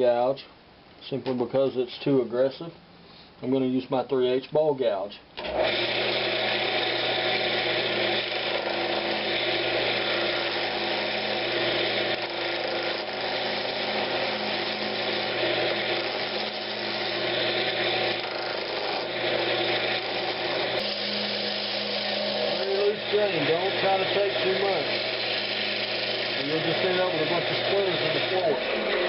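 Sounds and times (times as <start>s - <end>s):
wood lathe motor hum: 5.4s - 29.0s
gouge cutting wood hiss: 17.8s - 28.7s.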